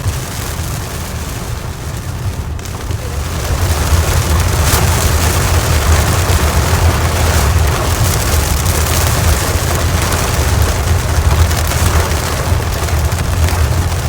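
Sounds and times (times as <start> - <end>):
deep continuous rumble: 0.0 - 14.0
heavy rain hissing: 0.0 - 14.0.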